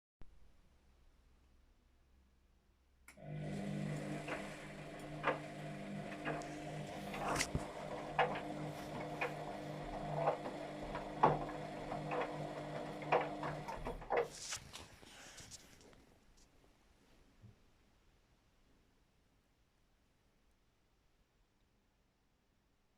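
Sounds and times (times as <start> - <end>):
washing machine motor hum: 3.1 - 14.6
washing machine clicks and knocks: 4.1 - 14.2.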